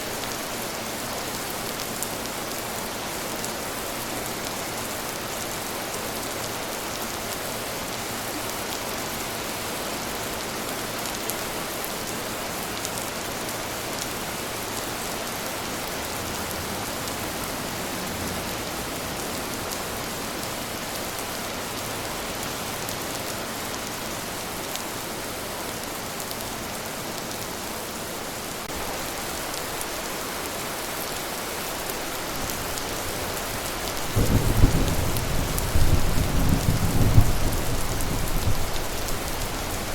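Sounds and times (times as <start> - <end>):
steady rain falling: 0.0 - 39.9
thunder rumble: 34.0 - 39.5.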